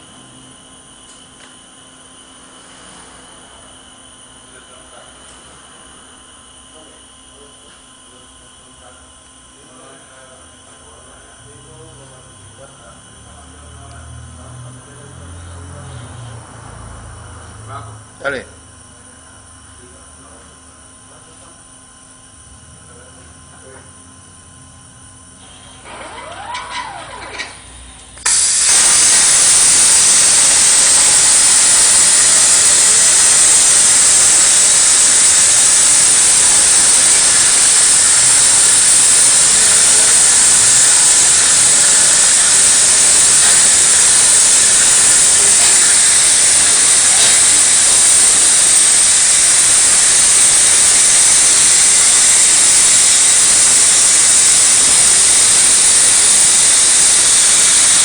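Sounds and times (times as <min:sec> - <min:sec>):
faint rising and falling whines: 0:00.0 - 0:58.0
plasma torch hissing: 0:28.2 - 0:58.0.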